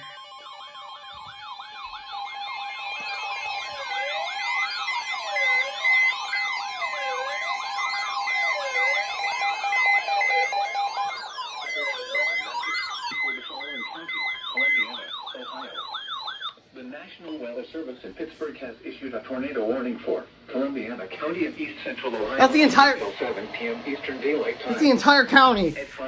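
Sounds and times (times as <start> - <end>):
high steady beeping: 0.0 - 16.5, 22.2 - 23.4, 24.7 - 26.0
sweeping siren-like tone: 0.0 - 16.6
weather alert radio alarms: 0.0 - 16.6, 21.4 - 26.0.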